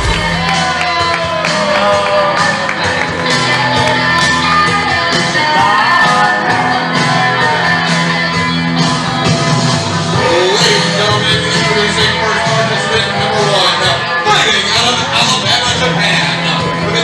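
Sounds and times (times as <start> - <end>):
loud rock music with singing: 0.0 - 17.0.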